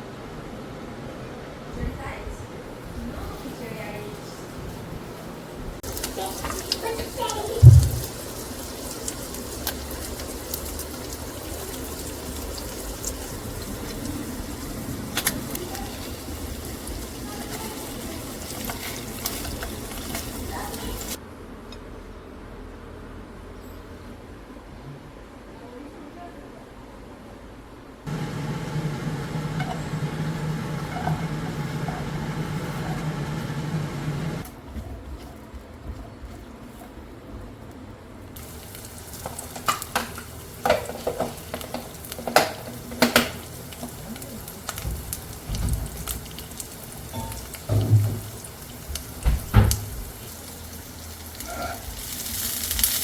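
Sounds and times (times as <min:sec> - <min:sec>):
running water from tap: 0:05.8 - 0:21.2, 0:28.1 - 0:34.4, 0:38.4 - 0:53.0
small electric motor humming: 0:28.1 - 0:34.4.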